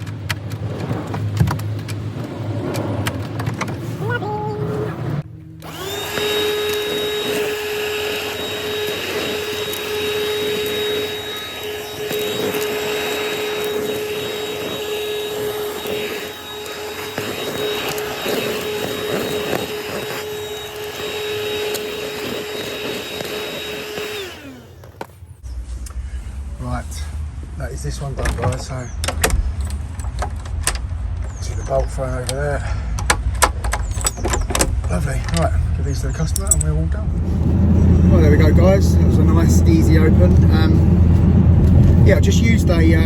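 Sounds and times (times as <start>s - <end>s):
vacuum cleaner motor whine: 5.1s - 25.5s, 36.9s - 43.0s.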